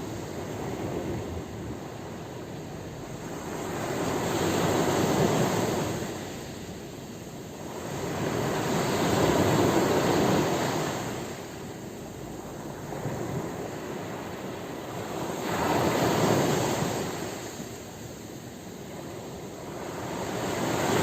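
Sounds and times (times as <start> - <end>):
sea waves breaking: 18.9 - 21.0.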